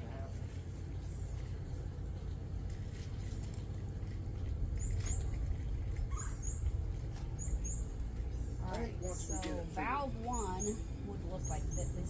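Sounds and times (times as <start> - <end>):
steady low rumble: 0.0 - 12.0
bird chirping: 4.8 - 12.0.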